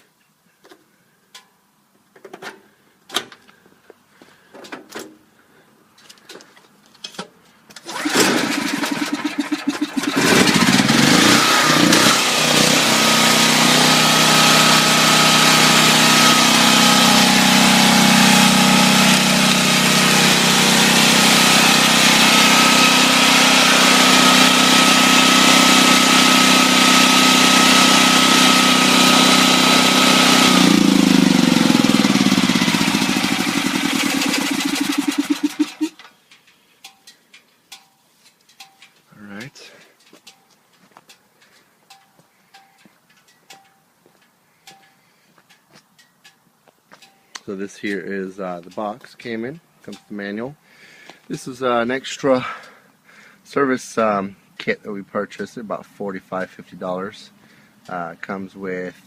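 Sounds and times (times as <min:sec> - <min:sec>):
generator engine cranking and running: 0:07.8 - 0:37.9.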